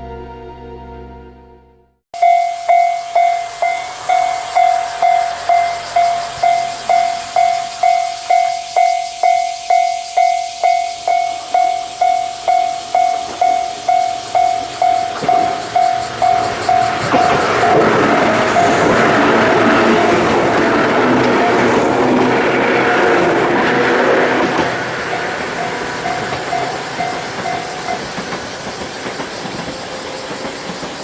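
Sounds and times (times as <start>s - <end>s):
electric train approaching: 2.2s - 31.0s.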